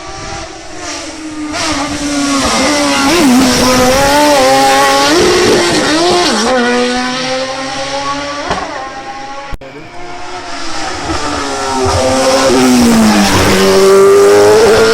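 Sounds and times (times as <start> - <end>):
race car engine passing: 0.0 - 14.9.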